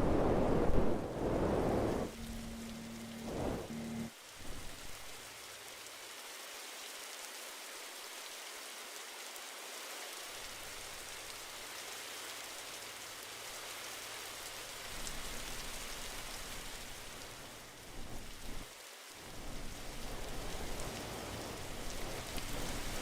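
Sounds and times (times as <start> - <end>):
low hum: 0.0 - 5.2
air conditioner hiss: 0.0 - 5.4.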